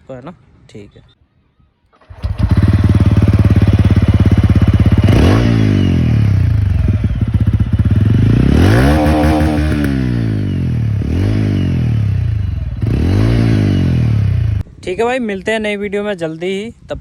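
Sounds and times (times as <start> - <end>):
motorcycle engine idling and revving: 2.0 - 14.7.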